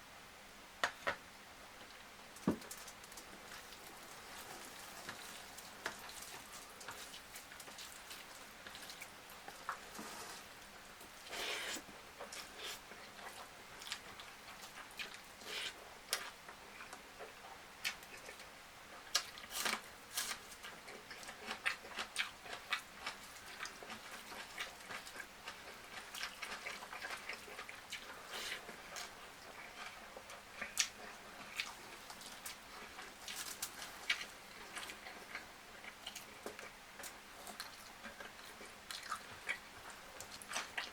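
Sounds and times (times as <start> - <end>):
person chewing food: 2.5 - 40.9.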